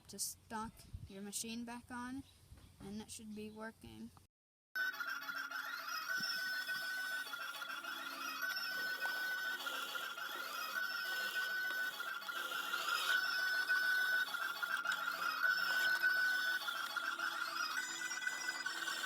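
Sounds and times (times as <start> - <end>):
toy claw machine whine: 4.8 - 19.0.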